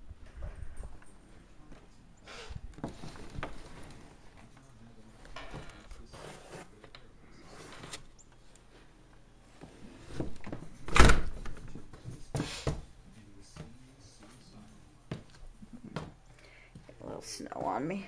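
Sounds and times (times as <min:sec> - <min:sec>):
loud door thud: 0:10.9 - 0:11.5.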